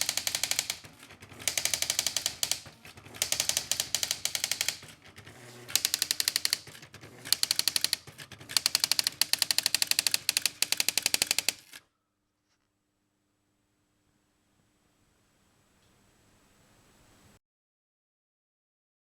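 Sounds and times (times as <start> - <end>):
daisy wheel hammer striking: 0.0 - 4.9
printer carriage movement: 0.0 - 11.8.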